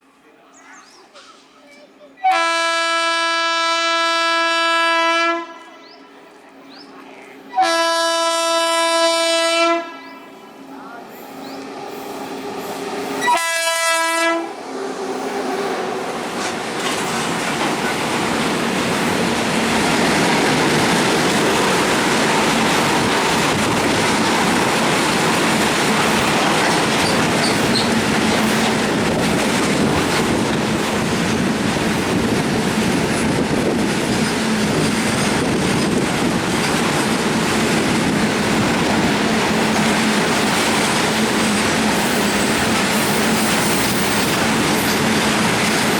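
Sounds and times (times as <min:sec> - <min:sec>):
freight train passing: 0:00.1 - 0:45.9
locomotive horn blast: 0:02.2 - 0:05.8, 0:07.5 - 0:10.3, 0:13.2 - 0:14.6.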